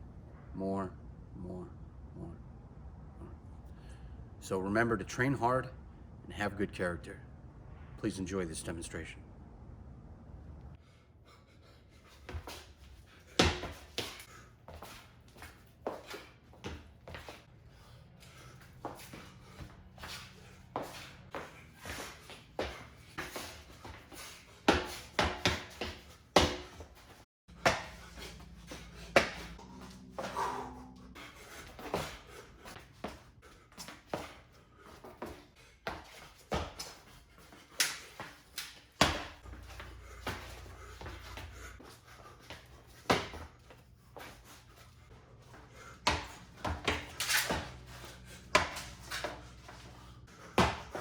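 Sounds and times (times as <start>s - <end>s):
feet striking the floor: 13.4s - 17.4s, 20.8s - 30.7s, 37.7s - 41.6s, 46.0s - 49.9s.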